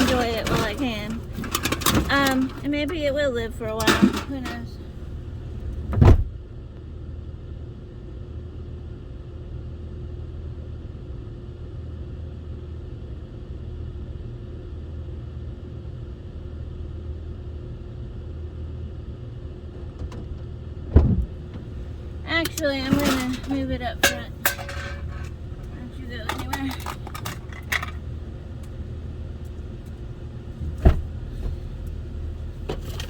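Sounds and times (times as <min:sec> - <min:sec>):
car engine idling: 0:00.0 - 0:06.0, 0:21.2 - 0:33.0
loud thump: 0:30.6 - 0:31.6.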